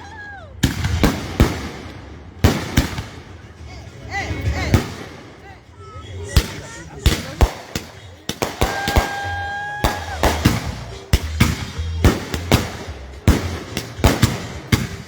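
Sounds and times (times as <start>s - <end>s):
fireworks bangs and pops: 0.6s - 5.6s, 6.2s - 15.0s
firework whistle: 8.5s - 14.2s.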